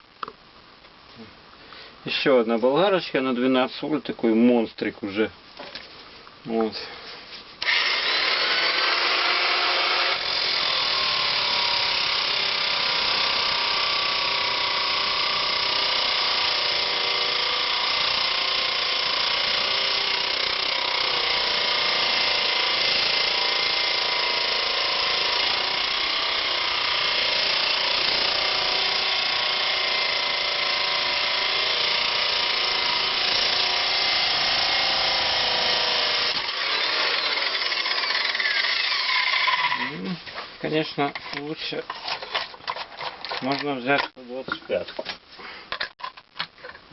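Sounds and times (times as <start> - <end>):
angle grinder motor whine: 7.6 - 40.0.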